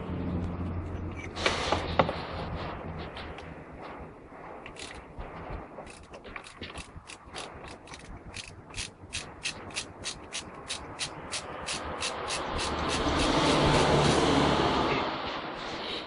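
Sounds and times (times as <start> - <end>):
ratchet wrench clicking: 4.7 - 5.0, 5.9 - 13.8.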